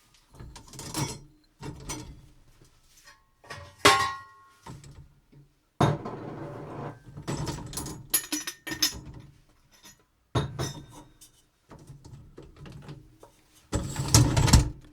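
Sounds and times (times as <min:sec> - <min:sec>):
dishes and cutlery clattering: 0:05.9 - 0:09.1.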